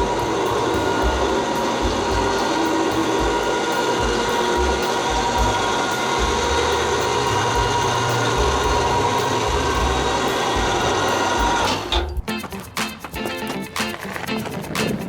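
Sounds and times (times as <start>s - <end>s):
power tool motor running: 0.0s - 12.0s
rhythmic music: 0.0s - 15.0s.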